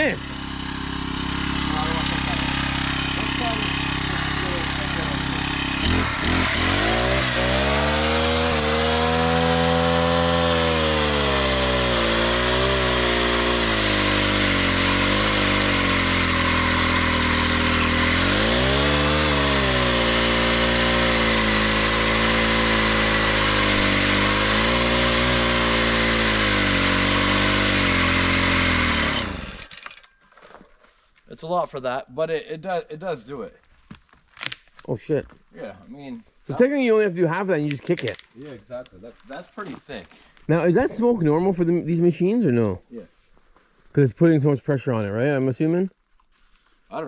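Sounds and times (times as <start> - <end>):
chainsaw cutting wood: 0.0 - 30.0.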